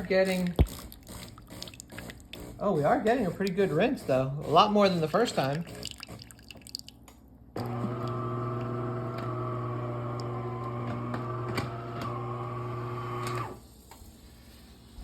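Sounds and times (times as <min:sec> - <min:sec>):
espresso machine pump humming: 0:07.6 - 0:13.6.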